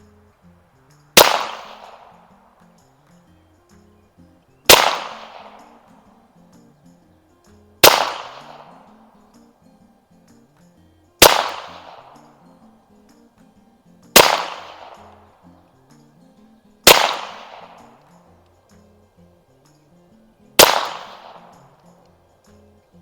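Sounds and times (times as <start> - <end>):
faint background music: 0.0 - 23.0
pistol shots: 1.2 - 2.3, 4.7 - 6.0, 7.8 - 9.0, 11.2 - 12.3, 14.1 - 15.3, 16.8 - 18.1, 20.6 - 21.8.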